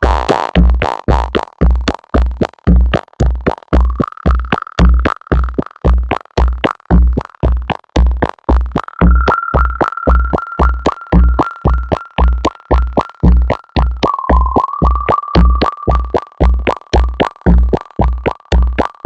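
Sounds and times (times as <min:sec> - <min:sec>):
synthesizer bass notes: 0:08.9 - 0:19.0
held high synth tone: 0:09.0 - 0:17.2.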